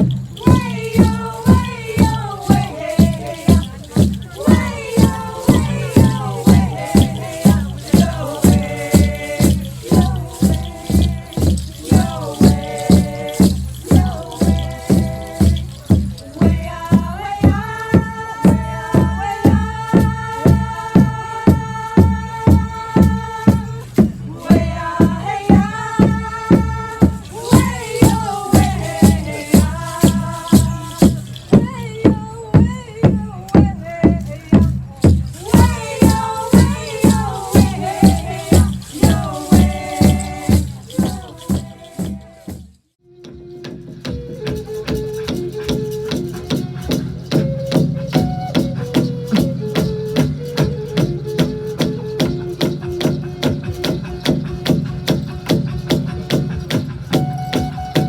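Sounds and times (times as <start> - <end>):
held melody line: 0.0 - 16.8, 24.4 - 31.9, 35.2 - 54.2
people singing: 0.0 - 42.7
steady drumbeat: 0.0 - 42.8
shaken rattle: 0.0 - 43.0, 44.0 - 58.0.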